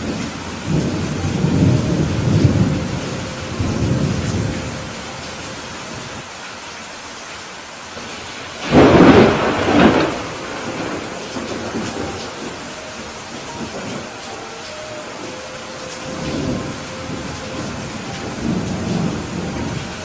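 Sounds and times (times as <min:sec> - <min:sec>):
thunder rumbling: 0:00.0 - 0:06.2, 0:08.0 - 0:20.0
heavy rain: 0:00.0 - 0:20.0
sharp thunderclap: 0:08.1 - 0:12.6.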